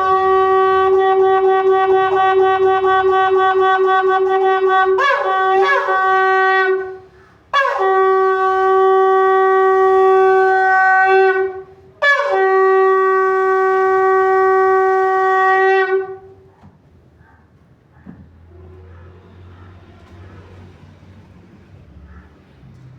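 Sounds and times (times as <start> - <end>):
shofar blasts: 0.0 - 16.4.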